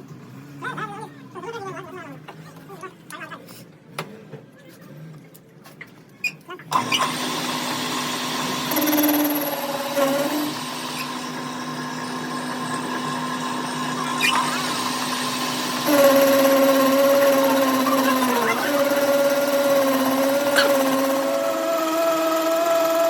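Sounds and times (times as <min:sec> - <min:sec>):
power tool motor humming: 0:06.7 - 0:23.0.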